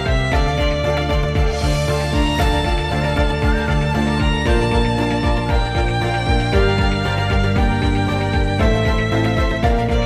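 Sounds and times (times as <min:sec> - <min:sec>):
melodic music with steady beat: 0:00.0 - 0:10.0.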